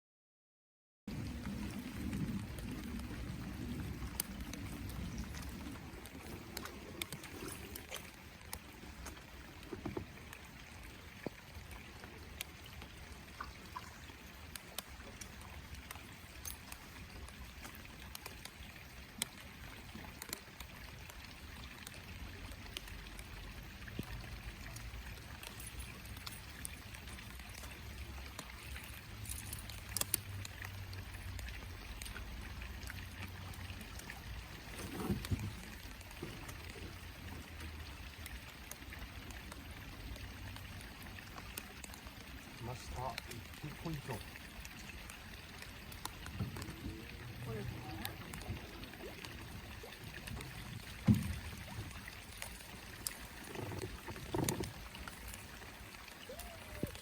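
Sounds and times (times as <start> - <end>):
low steady rumble: 1.1 - 7.7
water around boat: 1.1 - 57.0
small ticks: 11.2 - 42.2, 42.9 - 55.5.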